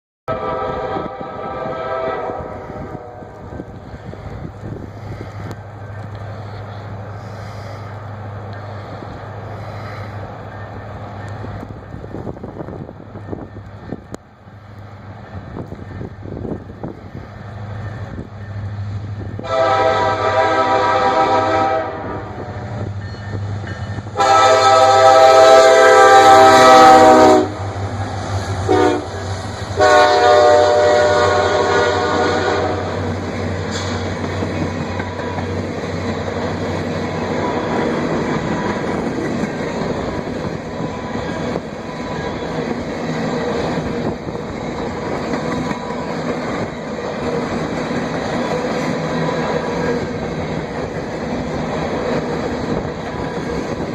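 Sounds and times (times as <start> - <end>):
locomotive air horn blasts: 0.3 - 3.5, 19.4 - 22.6, 24.2 - 27.8, 28.6 - 33.1
train wheels clattering on rail: 22.5 - 25.4, 26.0 - 53.9.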